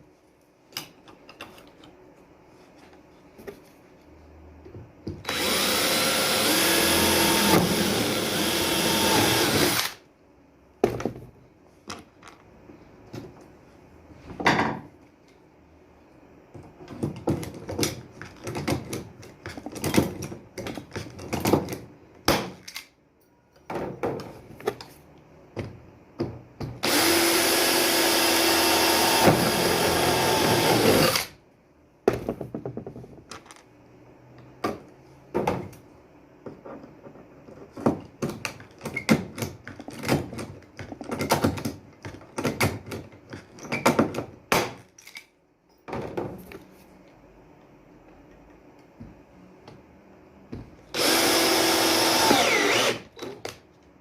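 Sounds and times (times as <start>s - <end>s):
power drill running: 5.3s - 10.0s, 26.8s - 31.3s, 50.9s - 53.1s.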